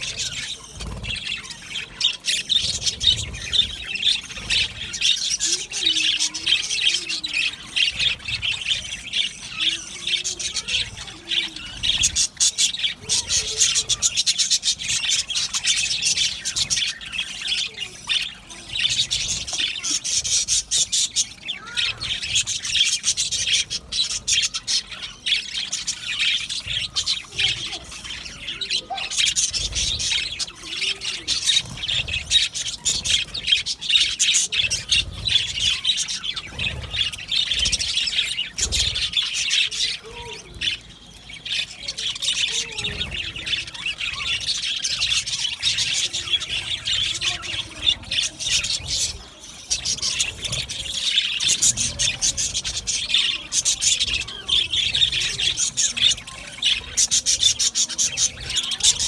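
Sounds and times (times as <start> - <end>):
budgerigars chirping and chattering: 0.0 - 59.0.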